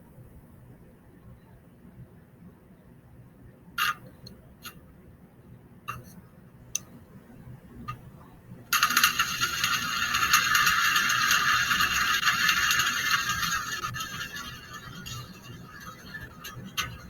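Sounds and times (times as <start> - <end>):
welding arc sputtering and crackling: 8.7 - 17.0.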